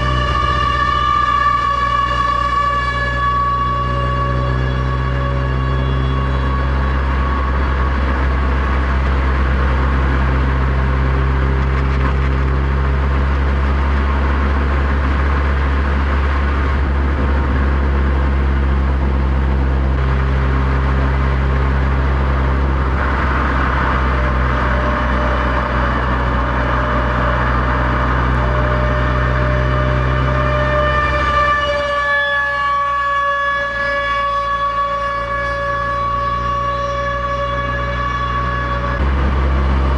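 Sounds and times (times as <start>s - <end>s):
faint siren tone: 0.0s - 11.4s, 20.3s - 39.9s
car engine cruising: 0.0s - 39.9s
road noise: 0.0s - 39.9s.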